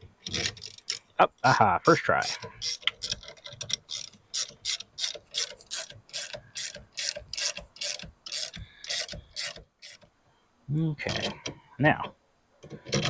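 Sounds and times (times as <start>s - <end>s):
hand ratchet rasping: 0.0s - 1.1s, 2.2s - 10.1s, 11.0s - 11.6s, 12.6s - 13.0s.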